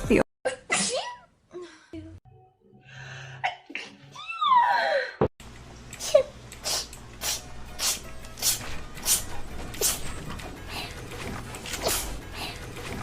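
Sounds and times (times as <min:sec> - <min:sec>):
person sneezing: 0:11.8 - 0:12.2.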